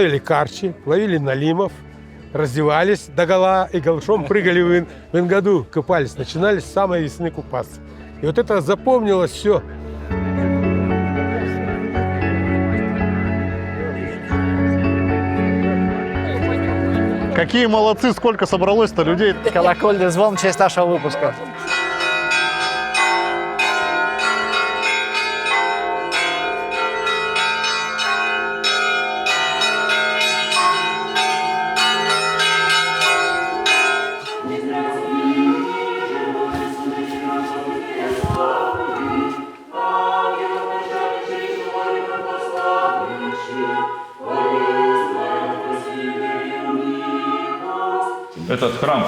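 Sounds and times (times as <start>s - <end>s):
choral singing: 18.9s - 49.0s
church bells ringing: 19.0s - 38.1s.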